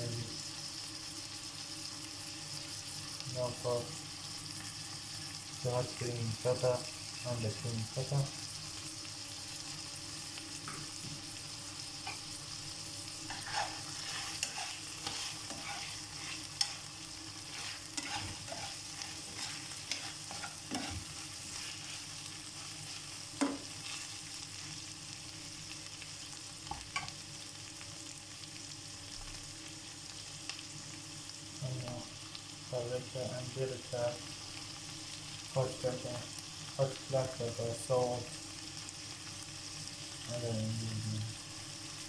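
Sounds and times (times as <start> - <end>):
food sizzling in a frying pan: 0.0 - 42.0
utensil scraping a pan: 13.2 - 24.1.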